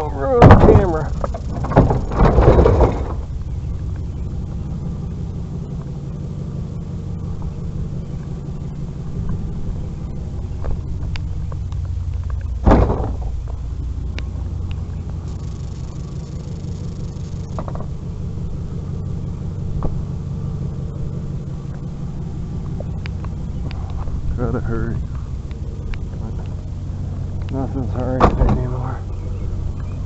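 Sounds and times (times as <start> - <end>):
vehicle engine humming: 0.0 - 30.0
loud thump: 0.4 - 3.3, 12.6 - 13.6, 28.2 - 28.7
knocks: 12.6 - 13.3.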